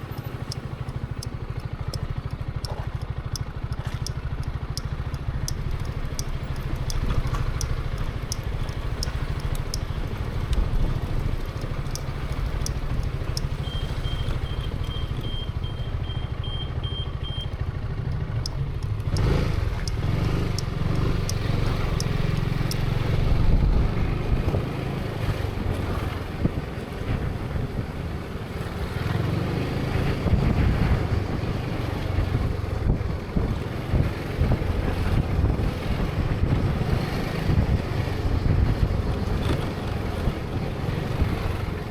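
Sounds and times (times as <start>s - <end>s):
light ticking: 0.0s - 23.2s
motorcycle engine: 0.0s - 41.9s.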